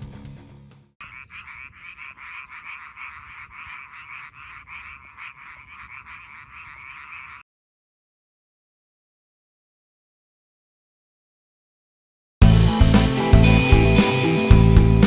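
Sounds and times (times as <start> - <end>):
frogs croaking in chorus: 1.0 - 7.4.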